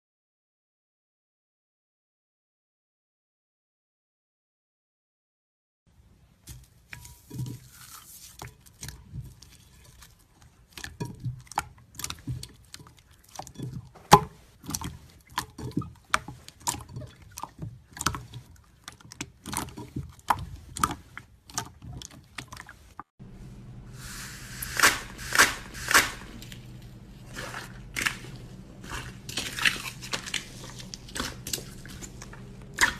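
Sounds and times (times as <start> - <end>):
crunchy slime crackling: 24.6 - 32.9.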